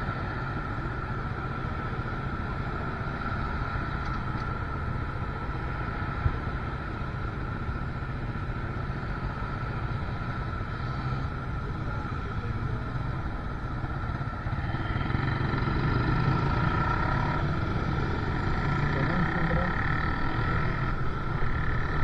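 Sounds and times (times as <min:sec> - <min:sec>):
wind and road noise: 0:00.0 - 0:22.0
motorcycle engine running: 0:00.1 - 0:22.0.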